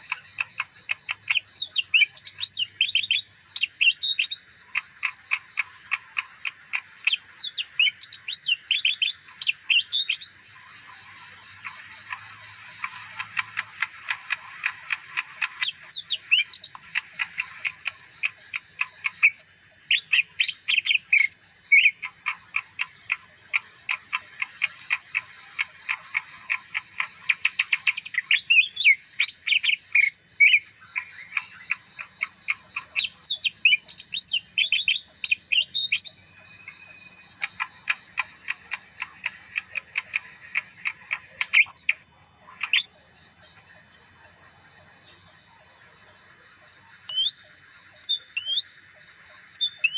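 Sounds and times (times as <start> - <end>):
bird singing chirps and whistles: 1.3 - 4.4, 7.0 - 10.4, 15.6 - 17.4, 19.2 - 22.0, 27.3 - 31.6, 33.0 - 36.7, 41.4 - 42.9, 47.1 - 47.4, 48.0 - 48.7, 49.6 - 49.9.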